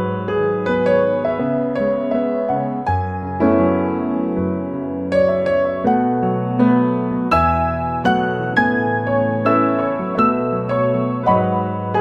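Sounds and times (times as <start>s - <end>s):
gentle piano melody: 0.0s - 12.0s.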